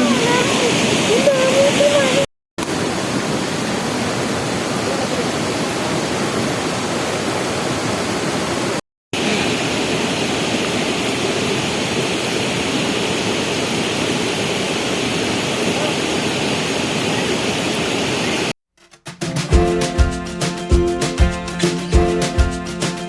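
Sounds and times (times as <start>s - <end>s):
waterfall rushing: 0.0s - 18.3s.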